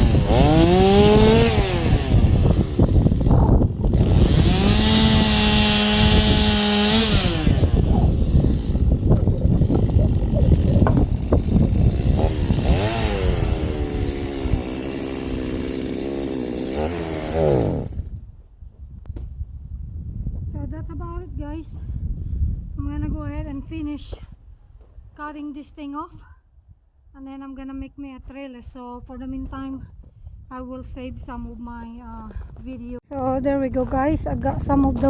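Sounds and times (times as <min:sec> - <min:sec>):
chainsaw cutting branches: 0:00.0 - 0:18.2.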